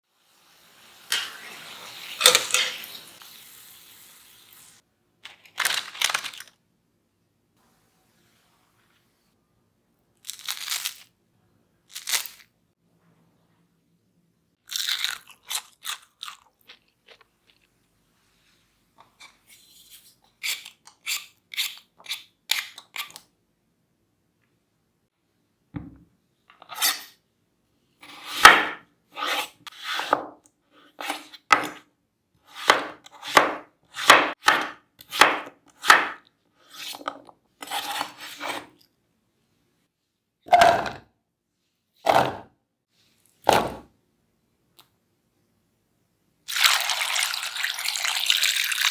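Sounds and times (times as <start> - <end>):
crispy food crunching: 10.2 - 11.1, 11.9 - 12.5, 14.7 - 17.9.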